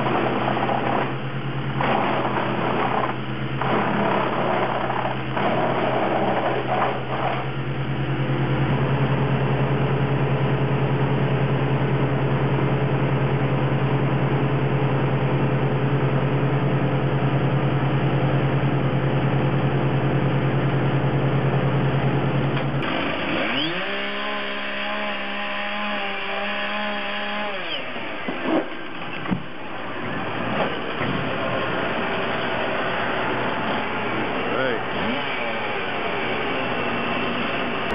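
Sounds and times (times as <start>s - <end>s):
heavy machinery engine running: 0.0s - 37.9s
machine pitch rising and falling: 22.8s - 28.3s.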